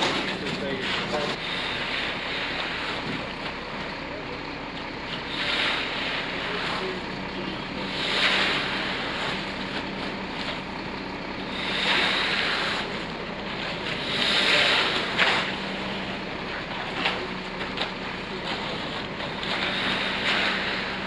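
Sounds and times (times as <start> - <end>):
engine hum: 0.0 - 21.0.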